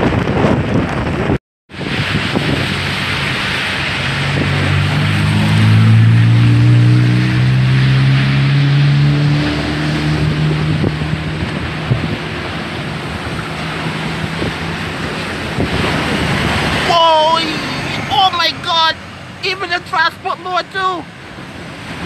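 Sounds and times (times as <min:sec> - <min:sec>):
wind on microphone: 0:00.0 - 0:18.8
rough surf: 0:00.0 - 0:22.0
vehicle driving past: 0:02.6 - 0:18.3.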